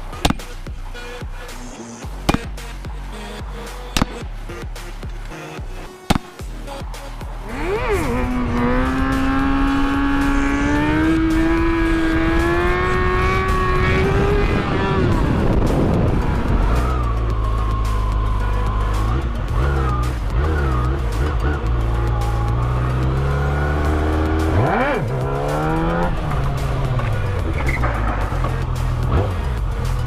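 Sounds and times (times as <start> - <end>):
sport bike engine accelerating: 7.4 - 30.0.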